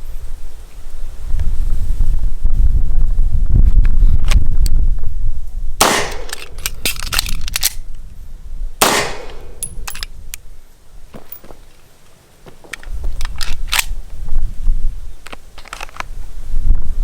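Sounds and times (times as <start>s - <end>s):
wind rumble on microphone: 0.0s - 11.6s, 12.4s - 17.0s
gunshots: 5.8s - 6.6s, 8.8s - 9.6s.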